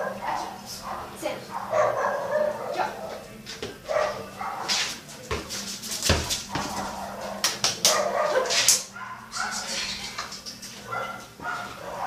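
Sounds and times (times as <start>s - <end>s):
dog barking and yipping: 0.0s - 3.2s, 3.9s - 4.8s, 6.6s - 10.2s, 10.8s - 12.0s.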